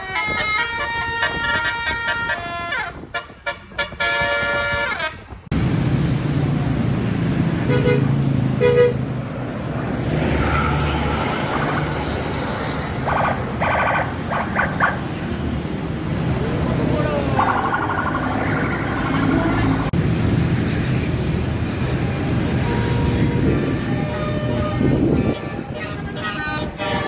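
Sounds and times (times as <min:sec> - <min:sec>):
musical air horns: 0:00.0 - 0:05.4, 0:22.6 - 0:27.0
bus engine running: 0:05.5 - 0:27.0.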